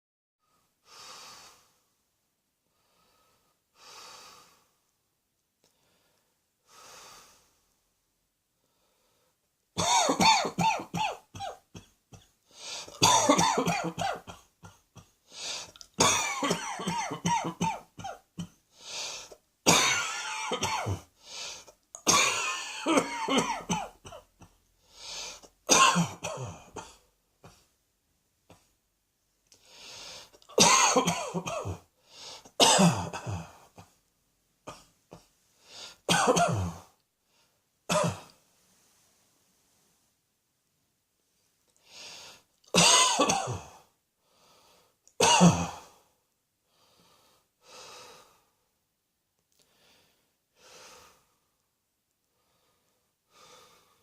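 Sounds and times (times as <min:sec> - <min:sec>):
faint breaths: 0:00.4 - 0:02.0, 0:02.6 - 0:04.9, 0:05.6 - 0:07.8, 0:08.6 - 0:09.5, 0:12.4 - 0:13.0, 0:15.2 - 0:15.8, 0:18.6 - 0:19.4, 0:21.0 - 0:21.8, 0:24.7 - 0:25.6, 0:29.5 - 0:30.5, 0:31.9 - 0:32.6, 0:35.1 - 0:36.1, 0:41.3 - 0:42.6, 0:44.2 - 0:45.1, 0:45.8 - 0:48.7, 0:49.6 - 0:51.6, 0:52.2 - 0:54.0
person coughing: 0:09.8 - 0:12.3, 0:12.9 - 0:15.2, 0:16.0 - 0:18.6, 0:19.7 - 0:21.1, 0:22.0 - 0:24.6, 0:25.7 - 0:27.6, 0:30.5 - 0:31.8, 0:32.6 - 0:33.9, 0:36.1 - 0:36.9, 0:37.9 - 0:38.4, 0:42.7 - 0:43.8, 0:45.2 - 0:45.9.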